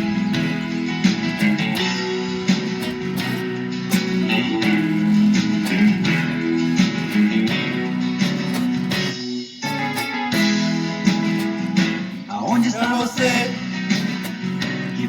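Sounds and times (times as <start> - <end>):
strummed guitar: 0.0 - 15.0.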